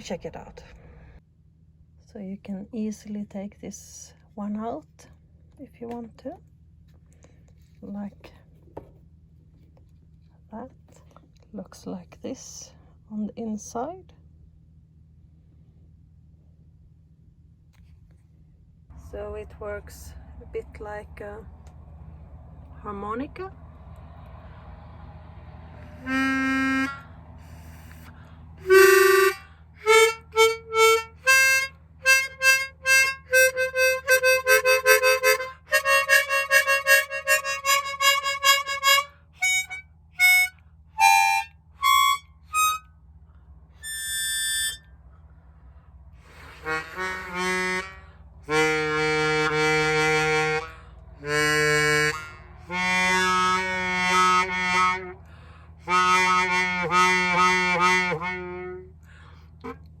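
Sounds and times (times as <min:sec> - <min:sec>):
accordion notes and chords: 0:25.8 - 0:42.9, 0:43.8 - 0:44.9, 0:46.2 - 0:59.0.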